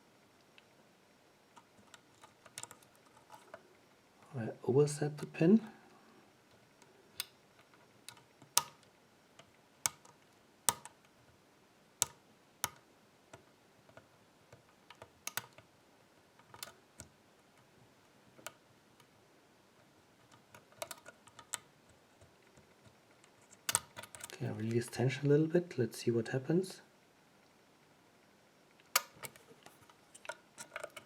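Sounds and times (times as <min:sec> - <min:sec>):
lock pick metal clicks: 0:01.6 - 0:03.4, 0:07.2 - 0:08.9, 0:09.8 - 0:11.1, 0:12.0 - 0:15.7, 0:16.4 - 0:17.1, 0:20.2 - 0:21.7, 0:23.6 - 0:24.4, 0:28.8 - 0:29.5.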